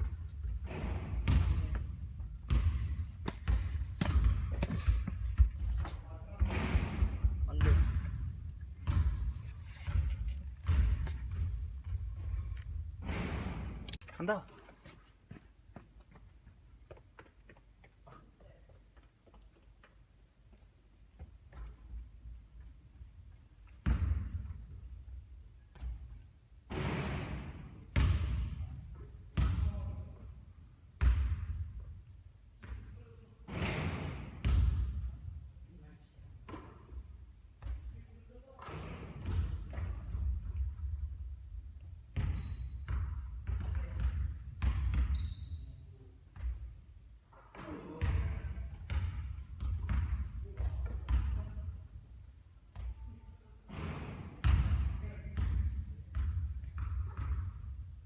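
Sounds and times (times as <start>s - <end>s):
basketball bouncing: 0.0s - 14.0s, 27.9s - 28.8s, 29.4s - 29.9s, 31.0s - 31.7s, 33.5s - 35.0s, 42.1s - 45.2s, 47.5s - 51.5s, 53.7s - 57.8s.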